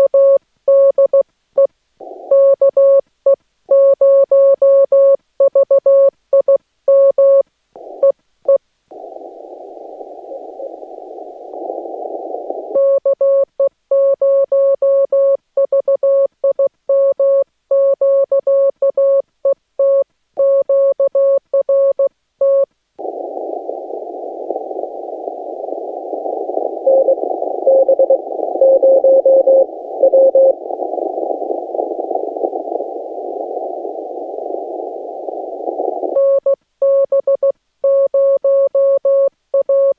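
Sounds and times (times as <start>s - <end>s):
radio receiver hiss: 2.0s - 2.9s, 7.7s - 13.2s, 23.0s - 36.5s
morse code reply: 23.6s - 39.9s
morse code tone: 26.1s - 32.9s.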